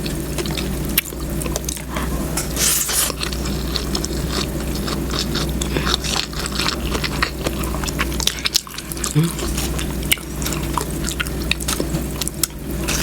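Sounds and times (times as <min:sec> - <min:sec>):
chewing with wet clicks: 0:00.0 - 0:02.1, 0:03.1 - 0:13.0
short scrape: 0:02.6 - 0:03.1.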